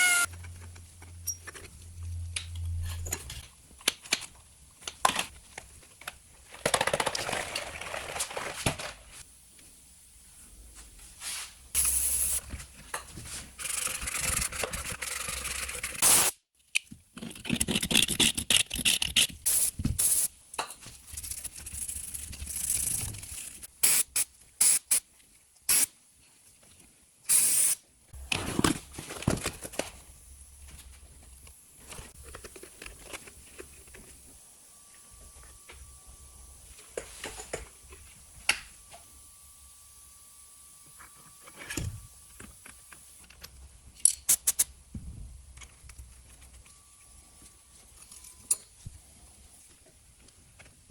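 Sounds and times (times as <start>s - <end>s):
short hissing bursts: 11.8s - 12.4s, 23.8s - 25.0s, 27.3s - 27.8s.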